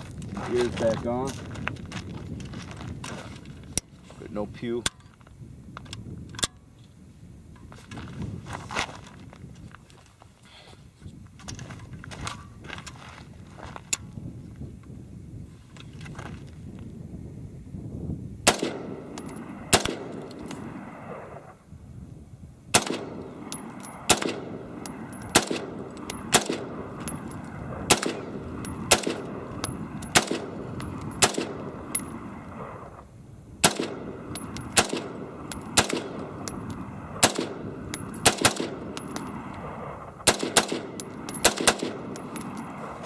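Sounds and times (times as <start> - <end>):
rifle shots echoing: 18.4 - 21.6, 22.7 - 33.0, 33.6 - 43.0.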